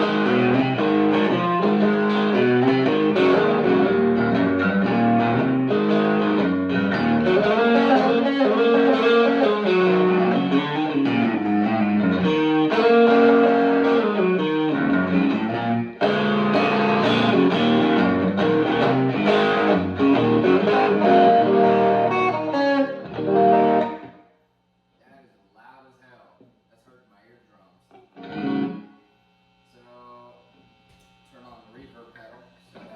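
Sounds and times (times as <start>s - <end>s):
electric guitar notes and chords: 0.0s - 24.2s, 28.0s - 29.0s.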